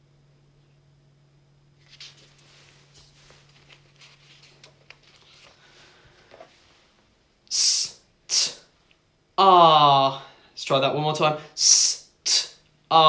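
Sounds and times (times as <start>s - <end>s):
low steady hum: 0.0s - 13.0s
faint rustling: 1.8s - 7.1s
person hissing an s sound: 7.5s - 8.7s, 11.5s - 12.6s.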